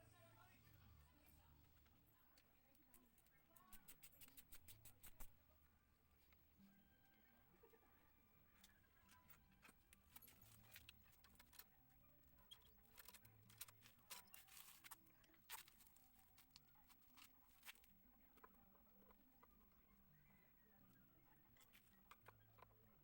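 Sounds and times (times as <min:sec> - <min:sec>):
light clicks and taps: 0:01.6 - 0:05.3.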